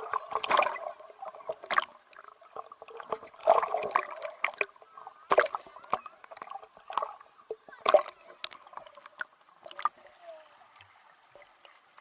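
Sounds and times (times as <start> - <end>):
water splashing and gurgling: 0.0 - 12.0.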